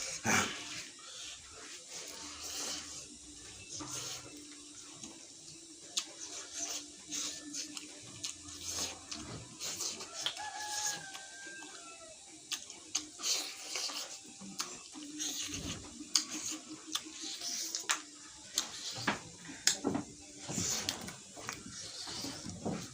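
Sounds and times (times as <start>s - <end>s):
person eating with slurps: 9.6s - 11.0s, 13.2s - 17.9s
rooster crowing: 9.7s - 12.3s.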